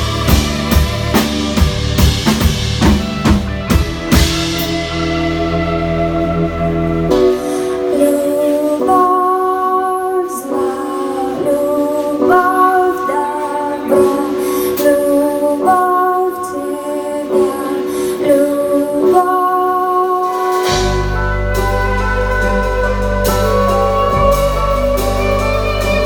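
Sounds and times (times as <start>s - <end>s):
deep bass: 0.0s - 7.8s, 20.7s - 26.0s
live band music: 0.0s - 26.0s
woman singing: 6.1s - 26.0s.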